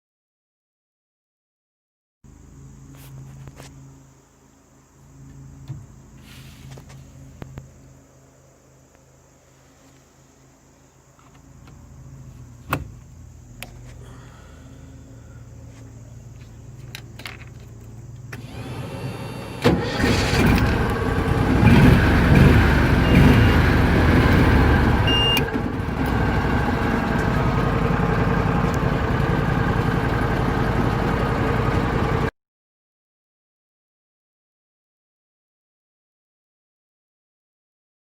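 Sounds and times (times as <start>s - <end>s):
vehicle engine starting and idling: 16.4s - 32.3s.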